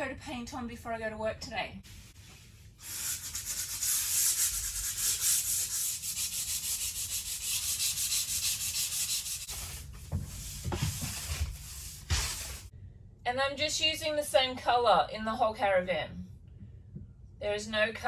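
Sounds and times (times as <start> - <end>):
sanding pad rubbing on plywood: 2.8 - 12.7.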